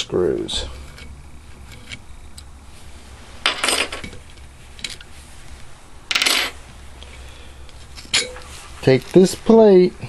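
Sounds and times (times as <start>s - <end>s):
small steel parts clinking: 3.4s - 5.1s, 8.0s - 9.0s.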